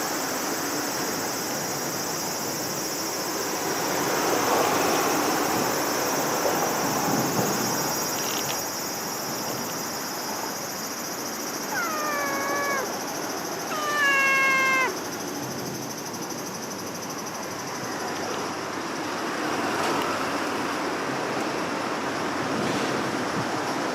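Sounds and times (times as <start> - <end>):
cat meowing: 11.7 - 13.0, 13.6 - 15.0.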